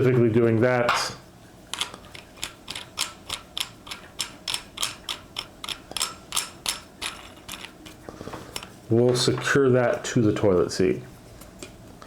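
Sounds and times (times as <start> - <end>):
ratcheting clicks: 1.7 - 7.8.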